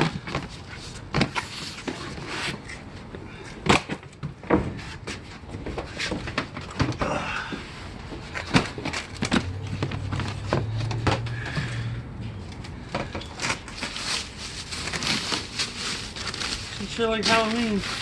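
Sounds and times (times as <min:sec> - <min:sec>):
household goods knocking and rustling: 0:03.5 - 0:11.8, 0:12.8 - 0:18.0.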